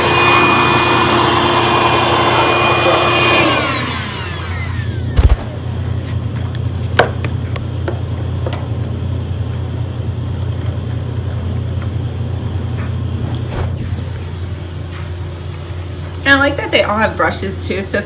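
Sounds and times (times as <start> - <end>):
steady low hum: 4.8 - 18.0.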